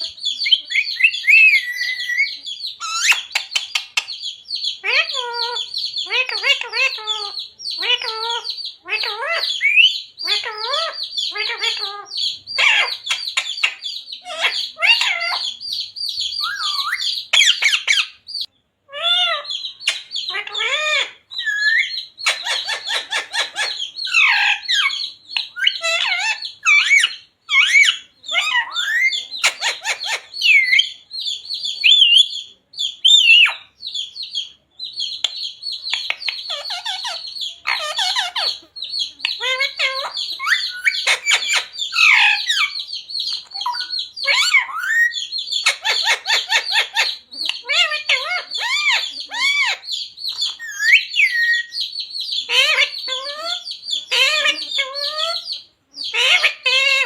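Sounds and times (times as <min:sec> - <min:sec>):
parakeet squawking and chattering: 0:00.0 - 0:57.0
parakeet mimicking speech: 0:04.8 - 0:12.9, 0:52.5 - 0:55.4.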